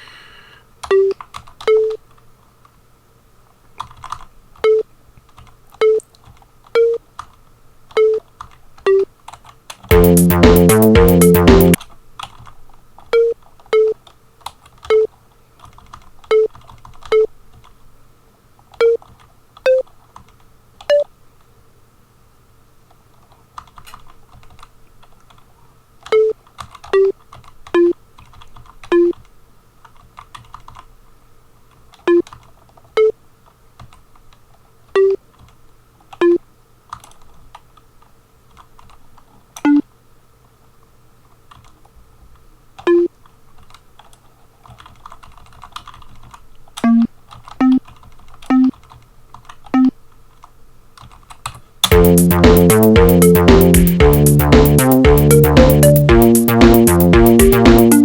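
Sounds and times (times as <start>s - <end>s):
computer keyboard typing: 0.8s - 2.0s, 3.8s - 4.7s, 5.3s - 12.5s, 13.5s - 17.7s, 26.0s - 30.9s, 31.9s - 33.1s, 36.2s - 37.6s, 38.5s - 39.8s, 41.5s - 41.8s, 43.6s - 58.0s
short synthesized notes: 9.9s - 11.8s, 51.9s - 58.0s.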